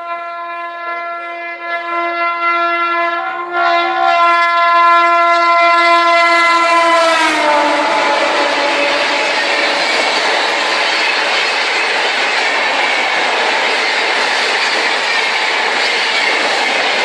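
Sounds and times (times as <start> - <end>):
train horn blast: 0.0 - 9.8.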